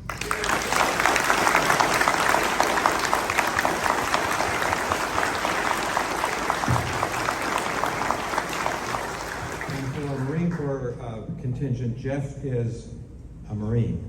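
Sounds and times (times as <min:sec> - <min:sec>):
audience applauding: 0:00.0 - 0:10.8.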